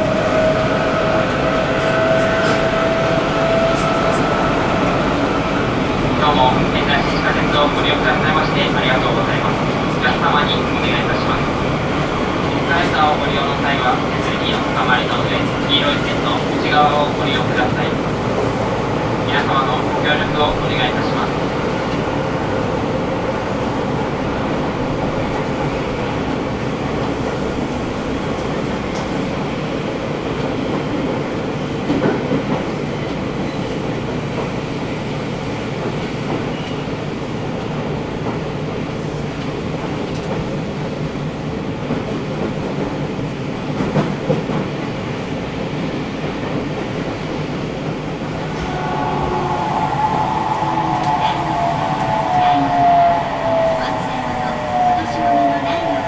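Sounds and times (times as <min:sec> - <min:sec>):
rail clacks: 0:00.0 - 0:56.0
train wheels rumbling on rail: 0:00.0 - 0:56.0
train motor whine: 0:48.3 - 0:56.0.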